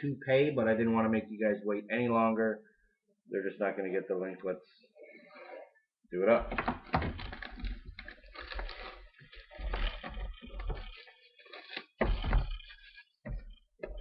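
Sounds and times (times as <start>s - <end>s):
plastic wrap tearing and crinkling: 7.0s - 13.1s.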